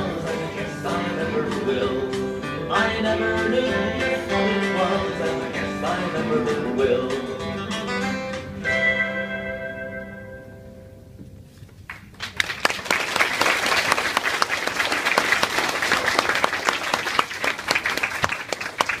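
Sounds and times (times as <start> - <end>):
guitar chord: 6.1 - 11.2
audience applause: 11.9 - 19.0.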